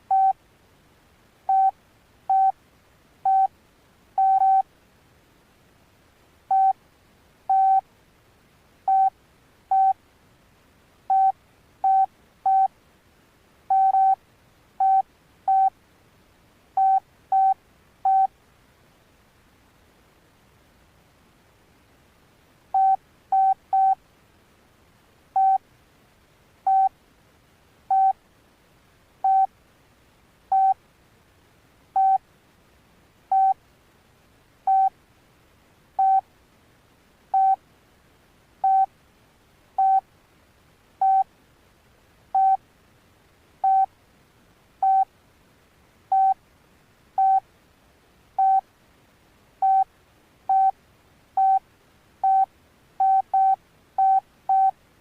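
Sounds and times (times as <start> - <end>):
phone key beeps: 0.1 - 0.4, 1.5 - 1.7, 2.3 - 2.5, 3.3 - 3.5, 4.2 - 4.6, 6.5 - 6.8, 7.5 - 7.8, 8.9 - 9.1, 9.7 - 10.0, 11.1 - 12.7, 13.7 - 14.2, 14.8 - 15.7, 16.8 - 18.3, 25.4 - 25.6, 26.7 - 26.9, 27.9 - 28.2, 29.2 - 29.5, 30.5 - 30.8, 32.0 - 32.2, 33.3 - 33.6, 34.7 - 34.9, 36.0 - 36.2, 37.4 - 37.6, 38.6 - 38.9, 39.8 - 40.0, 41.0 - 41.2, 42.4 - 42.6, 43.6 - 43.9, 44.8 - 45.1, 46.1 - 46.4, 47.2 - 47.4, 48.4 - 48.6, 49.6 - 49.8, 50.5 - 50.7, 51.4 - 51.6, 52.2 - 54.7.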